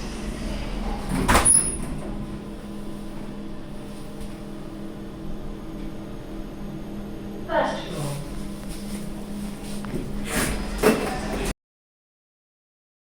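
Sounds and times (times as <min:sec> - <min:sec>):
lift travelling with low hum: 0:00.0 - 0:11.5
lift doors shutting thud: 0:00.4 - 0:02.4.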